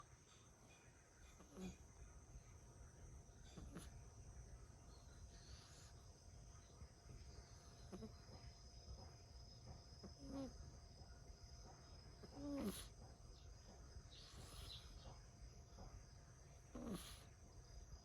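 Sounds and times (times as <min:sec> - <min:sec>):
cicadas droning: 0:00.0 - 0:18.0
kitten snoring: 0:01.4 - 0:01.9, 0:07.9 - 0:08.2, 0:10.2 - 0:10.5, 0:12.2 - 0:13.0, 0:16.7 - 0:17.4.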